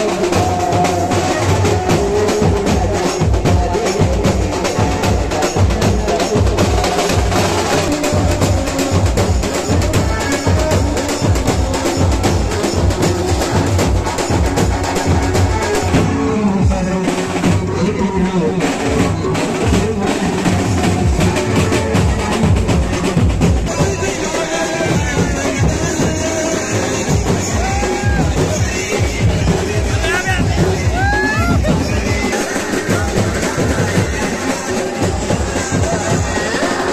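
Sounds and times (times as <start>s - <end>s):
loud drum-heavy music: 0.0s - 36.9s.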